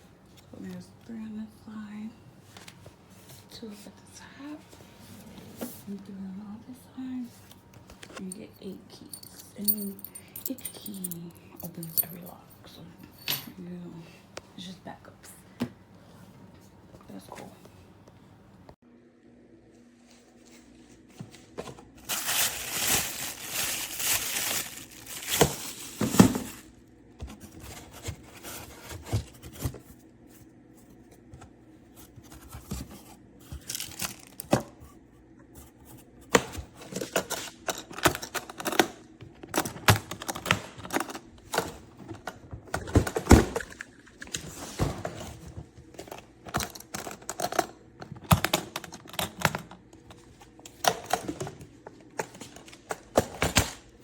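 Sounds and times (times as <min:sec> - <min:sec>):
crinkling plastic rustle: 0:20.1 - 0:26.8, 0:33.5 - 0:34.4.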